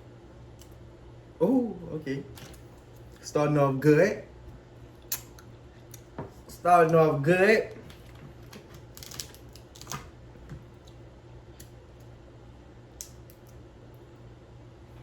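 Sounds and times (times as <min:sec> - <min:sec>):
crab shells cracking: 0:08.4 - 0:10.2.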